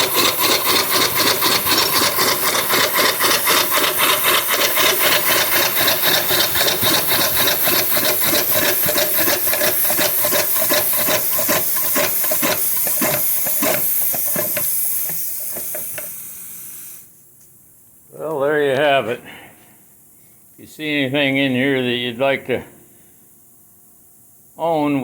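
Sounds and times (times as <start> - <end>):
steam engine exhaust chuffs: 0.0 - 17.1
steam hiss: 0.0 - 17.1.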